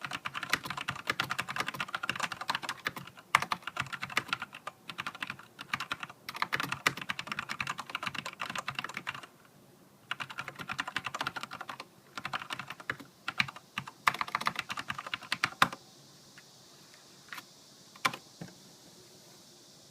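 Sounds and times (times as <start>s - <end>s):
mechanical keyboard typing: 0.0s - 9.3s, 10.1s - 15.8s.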